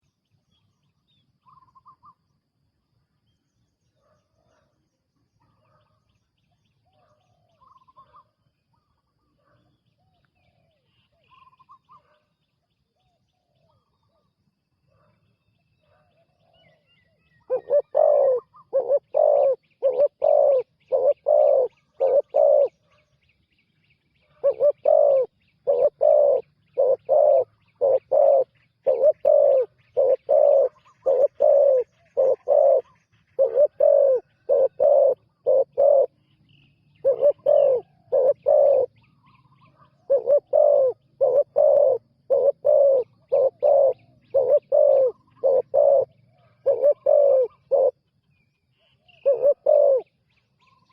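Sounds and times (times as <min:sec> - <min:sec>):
faint fast chirping: 0:13.6 - 0:50.9
dove cooing: 0:17.4 - 0:22.9, 0:24.3 - 0:36.2, 0:37.0 - 0:39.1, 0:39.9 - 0:48.0, 0:49.1 - 0:50.1.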